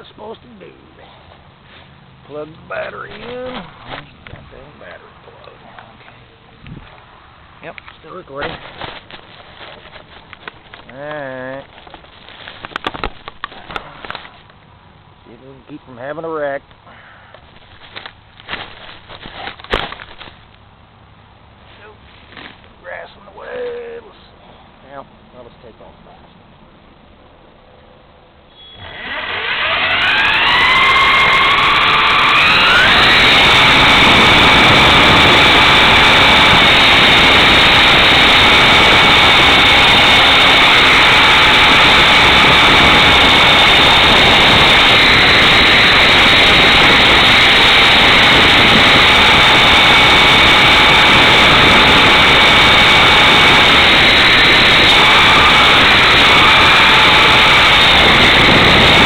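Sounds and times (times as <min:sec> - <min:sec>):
model helicopter motor whine: 0:28.6 - 0:59.0
rush of air: 0:31.0 - 0:59.0.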